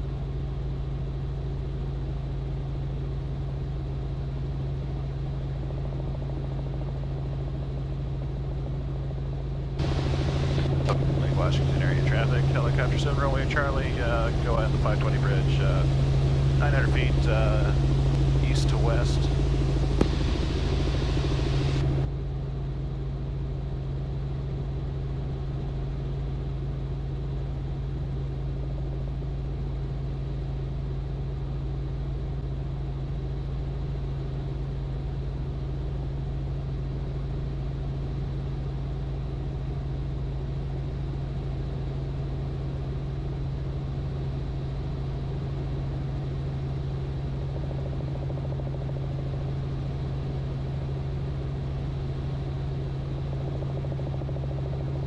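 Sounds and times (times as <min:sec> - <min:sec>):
helicopter drone from cabin: 0:00.0 - 0:55.0.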